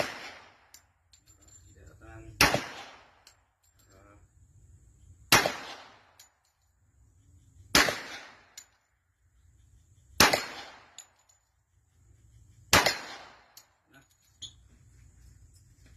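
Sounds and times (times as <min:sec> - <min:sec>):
pistol shots echoing: 0:02.4 - 0:03.2, 0:05.3 - 0:06.2, 0:07.7 - 0:08.6, 0:10.2 - 0:11.0, 0:12.7 - 0:13.5.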